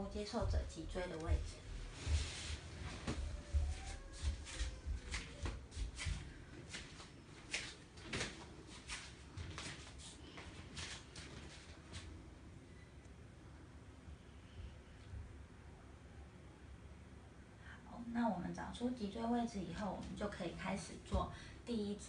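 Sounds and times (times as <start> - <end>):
hands rustling on cloth: 1.7 - 12.2.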